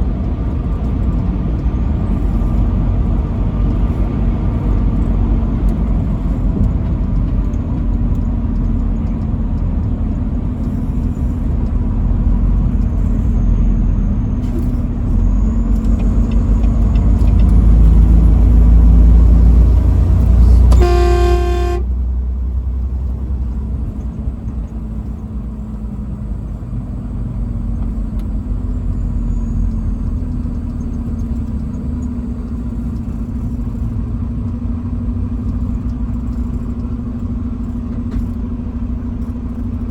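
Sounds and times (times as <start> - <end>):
truck engine rumble: 0.0 - 39.9
truck horn blast: 20.3 - 22.0.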